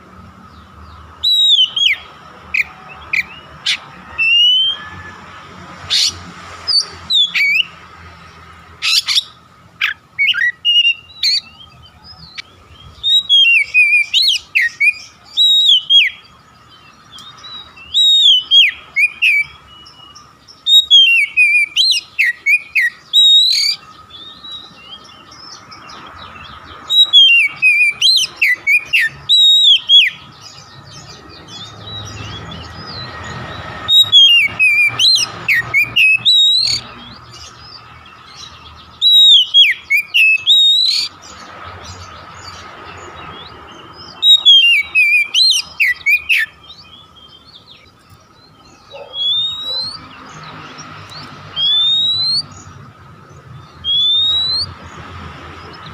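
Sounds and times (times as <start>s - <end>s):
bird singing whistled phrases: 1.2s - 3.5s, 8.8s - 16.3s, 17.2s - 25.3s, 26.9s - 33.2s, 33.8s - 37.2s, 39.0s - 41.2s, 44.1s - 48.0s, 48.9s - 50.1s, 51.6s - 52.7s, 53.8s - 54.8s.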